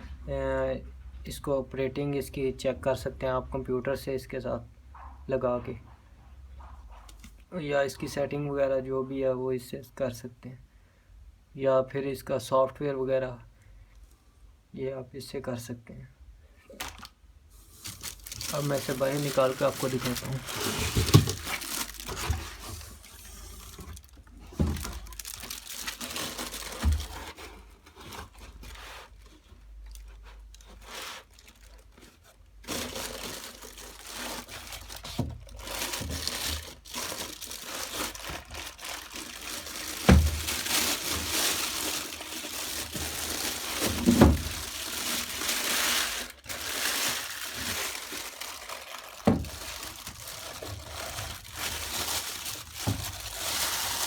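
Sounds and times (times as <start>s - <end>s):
packaging crinkling and rustling: 16.7s - 54.0s
knocks of box being handled: 20.6s - 22.9s.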